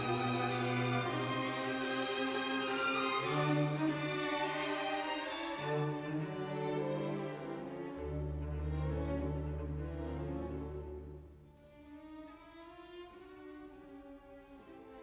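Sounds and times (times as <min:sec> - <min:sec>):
slow string orchestra: 0:00.0 - 0:15.0.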